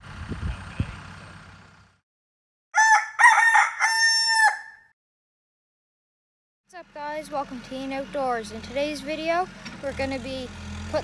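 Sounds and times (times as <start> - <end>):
rooster crowing: 2.8 - 4.9.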